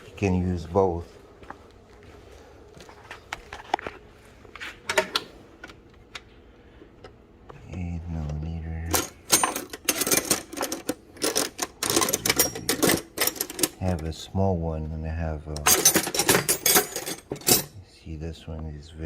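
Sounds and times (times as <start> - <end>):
metal hand tools clattering: 8.9 - 14.0, 15.6 - 17.8.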